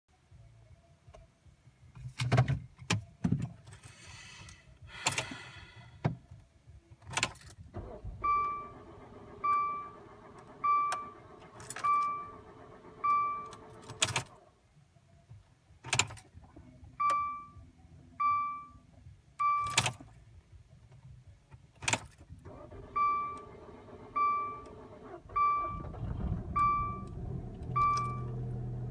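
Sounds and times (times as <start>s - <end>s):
car warning chime: 10.6s - 12.4s, 24.1s - 28.6s
low rumble: 25.6s - 28.9s.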